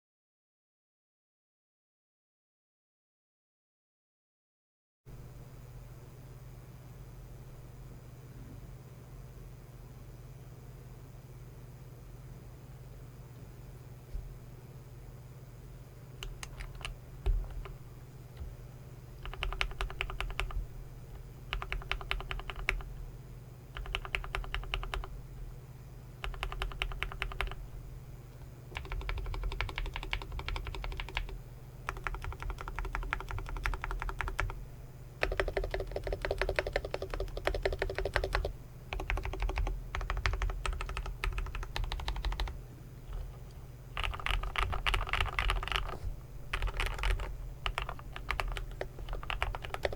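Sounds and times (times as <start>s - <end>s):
typing on mechanical keyboard: 16.2s - 17.8s, 19.2s - 20.6s, 21.5s - 22.9s, 23.8s - 25.1s, 26.2s - 27.6s, 28.7s - 34.6s, 35.2s - 43.4s, 44.0s - 49.9s.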